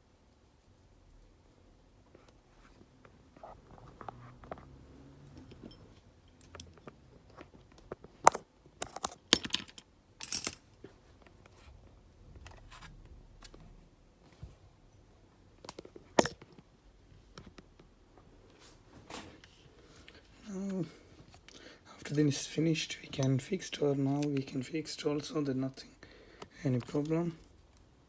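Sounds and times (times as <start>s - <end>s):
small tools clinking on hard surface: 5.4s - 6.9s, 9.0s - 10.7s.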